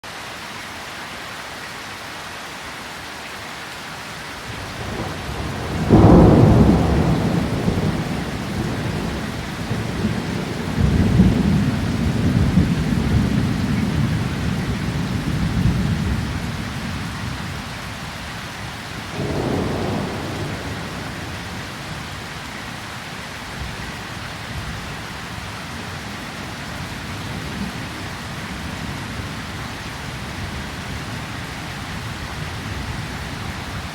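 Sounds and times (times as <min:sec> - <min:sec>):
steady rain falling: 0:00.0 - 0:33.9
rolling thunder: 0:04.6 - 0:17.7, 0:19.1 - 0:22.7.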